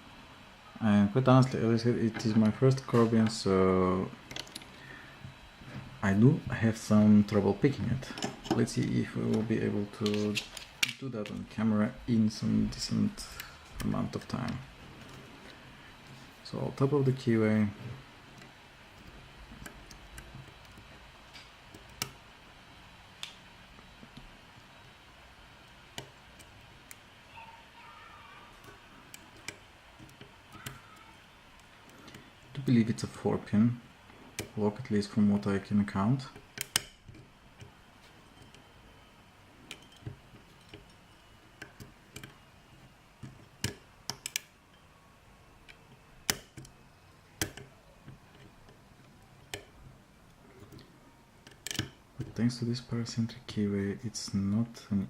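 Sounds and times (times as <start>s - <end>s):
lock picks clicking in padlock: 36.4s - 37.7s, 43.6s - 44.5s, 51.4s - 52.0s.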